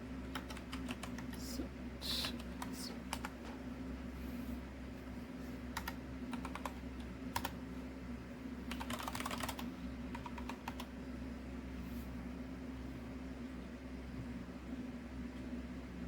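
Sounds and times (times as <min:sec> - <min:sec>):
steady low hum: 0:00.0 - 0:16.0
computer keyboard typing: 0:00.2 - 0:01.4, 0:02.2 - 0:03.4, 0:05.8 - 0:07.6, 0:08.7 - 0:10.9.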